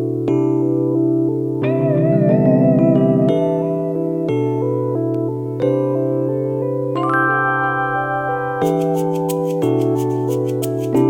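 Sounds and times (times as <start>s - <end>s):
keyboard chords: 0.0s - 11.0s
bass line: 1.8s - 3.9s
light ticking beat: 8.6s - 11.0s.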